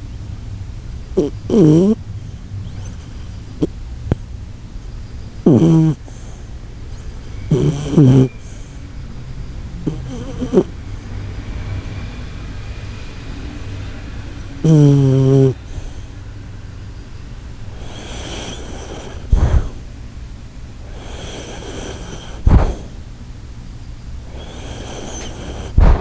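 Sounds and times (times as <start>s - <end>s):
steady low hum: 0.0s - 26.0s
dog snoring: 1.1s - 4.2s, 5.4s - 16.2s, 17.5s - 19.9s, 20.8s - 23.0s, 24.2s - 26.0s.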